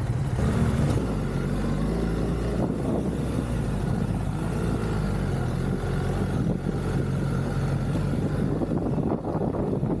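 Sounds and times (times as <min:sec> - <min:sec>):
motorcycle engine running: 0:00.0 - 0:10.0
wind rumbling on microphone: 0:02.1 - 0:10.0.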